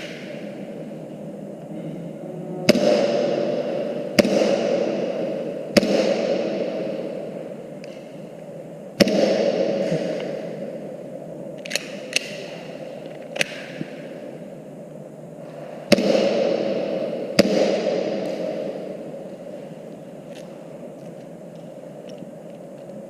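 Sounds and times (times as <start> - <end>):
airsoft pistol shots: 4.1 - 7.1, 9.0 - 10.5, 15.9 - 18.9.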